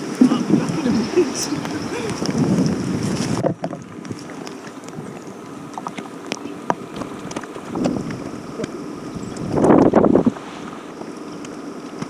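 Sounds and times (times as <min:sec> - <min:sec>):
wind buffeting microphone: 0:00.0 - 0:05.2, 0:06.7 - 0:10.5
rain ticks: 0:00.1 - 0:10.0, 0:11.0 - 0:12.0.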